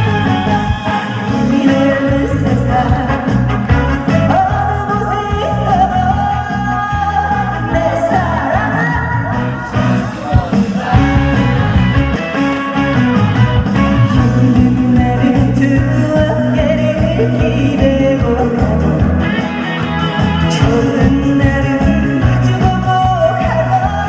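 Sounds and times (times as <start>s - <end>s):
amplified band with bass beat: 0.0s - 24.0s
woman singing through a pa: 1.3s - 9.7s, 14.1s - 19.4s, 20.4s - 24.0s.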